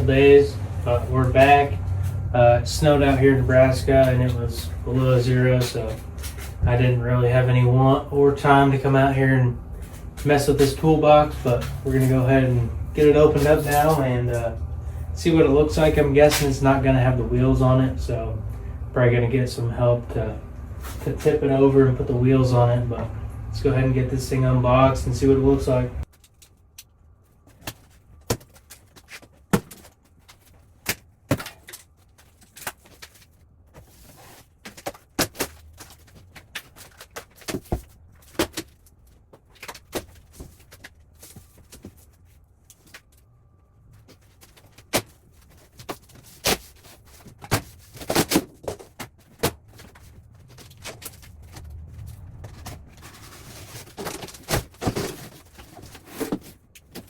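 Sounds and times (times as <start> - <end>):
cardboard packaging handling: 26.0 - 43.2, 44.0 - 57.0
packaging rustling: 26.0 - 43.2, 44.0 - 57.0.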